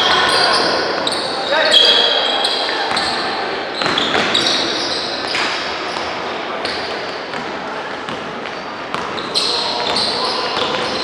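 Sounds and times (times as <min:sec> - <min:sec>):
crowd noise: 0:00.0 - 0:11.0
basketball bouncing on court: 0:08.9 - 0:11.0.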